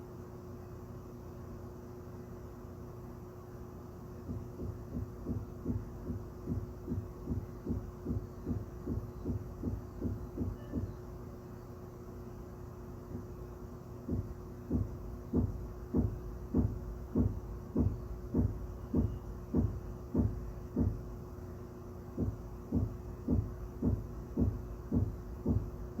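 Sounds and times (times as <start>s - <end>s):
steady low hum: 0.0s - 26.0s
dull thumps through ceiling: 4.3s - 11.0s, 14.1s - 21.1s, 22.2s - 26.0s.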